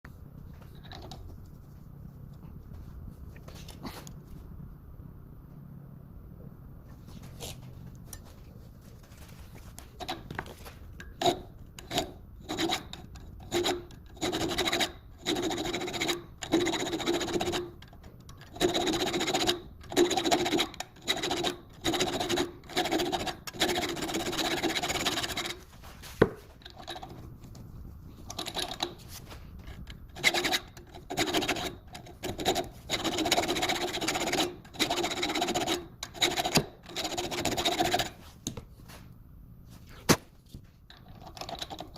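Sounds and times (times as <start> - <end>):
hacksaw rasping on screw threads: 11.1 - 17.8, 18.4 - 25.6, 29.8 - 38.2.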